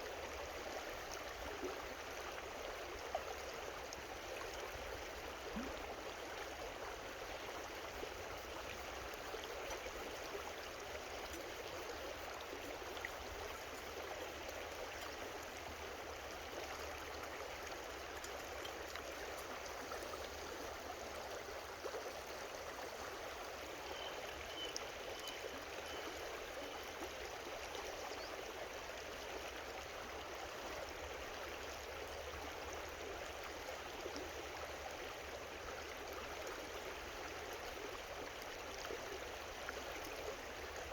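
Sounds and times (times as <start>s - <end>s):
creek babbling: 0.0s - 40.9s.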